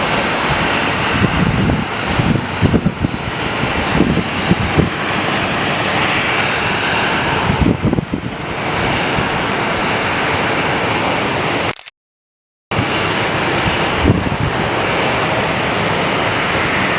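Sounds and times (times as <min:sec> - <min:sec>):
jet engines roaring: 0:00.0 - 0:11.7, 0:12.7 - 0:16.9
wind buffeting microphone: 0:00.0 - 0:11.7, 0:12.7 - 0:16.9.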